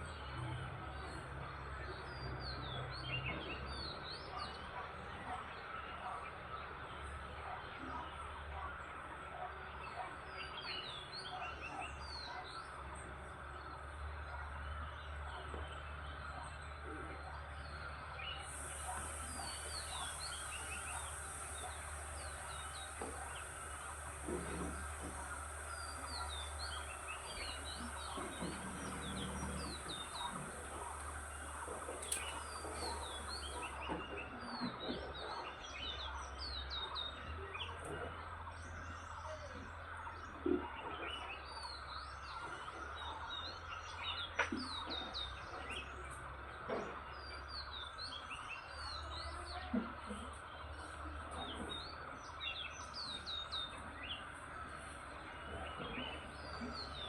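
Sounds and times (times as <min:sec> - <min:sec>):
small birds chirping: 0:00.0 - 0:57.0
steady high-pitched hiss: 0:18.2 - 0:33.9.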